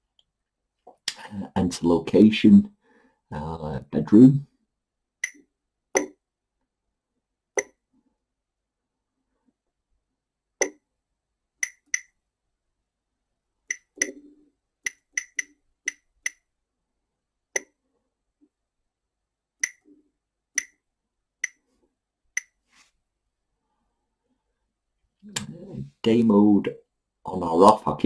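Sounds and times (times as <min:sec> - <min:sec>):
high key-press beeps: 0:14.9 - 0:16.4.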